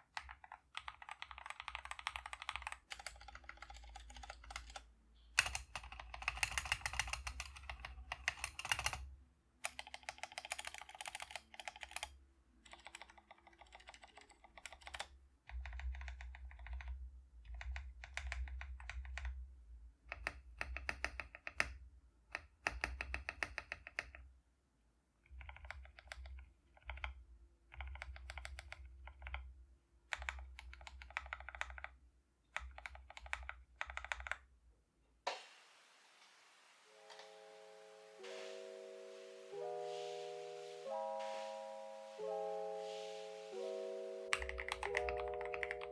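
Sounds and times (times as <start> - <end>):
mechanical keyboard typing: 0.0 - 9.0, 9.6 - 19.3, 20.1 - 21.7, 22.4 - 24.2, 25.3 - 29.4, 30.1 - 31.9, 32.5 - 34.4, 44.3 - 45.9.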